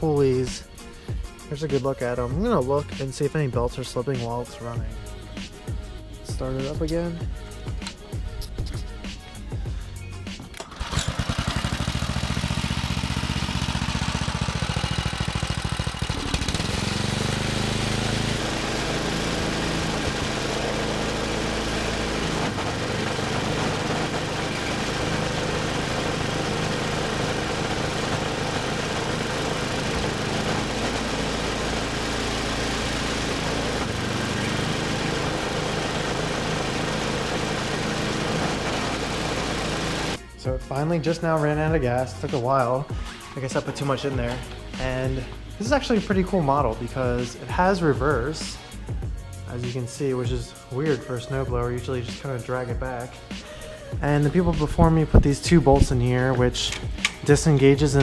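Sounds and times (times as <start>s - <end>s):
background music: 0.0s - 58.0s
small gasoline engine running: 10.5s - 40.2s.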